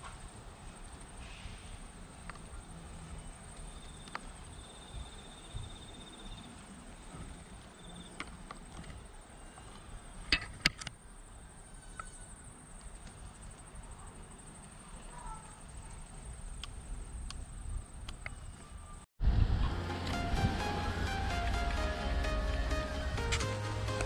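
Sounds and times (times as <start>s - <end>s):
insect chirring: 2.6s - 6.6s.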